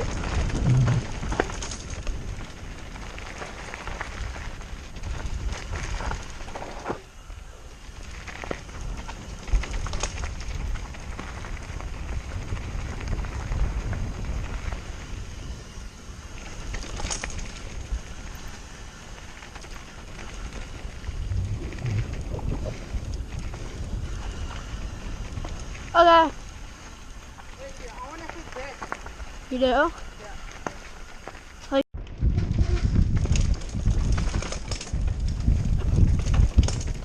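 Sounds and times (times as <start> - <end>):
wind rumble on microphone: 0.0 - 30.2, 31.3 - 37.0
bike tyres rolling on dirt: 0.0 - 37.0
low thumps: 0.5 - 1.3, 21.2 - 23.6.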